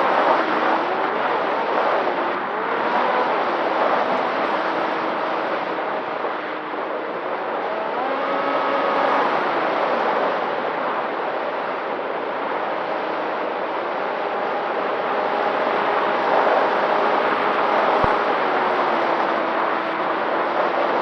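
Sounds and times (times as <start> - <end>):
electric motor and propeller whining: 0.0 - 10.7
steady rushing noise: 0.0 - 21.0.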